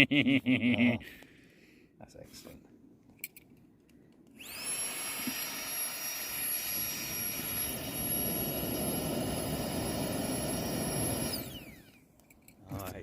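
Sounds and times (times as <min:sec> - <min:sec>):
air pump motor whining: 0:04.4 - 0:12.0.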